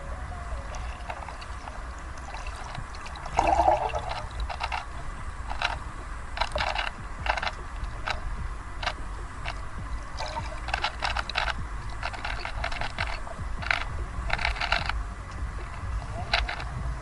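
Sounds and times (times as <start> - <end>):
muffled water rumble: 0.0 - 17.0
bubbling gurgle: 0.7 - 4.6, 9.9 - 10.8.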